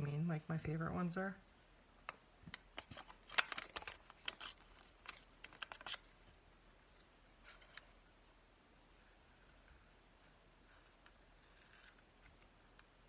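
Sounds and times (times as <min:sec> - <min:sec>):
paper rustling by hand: 0:02.5 - 0:06.3.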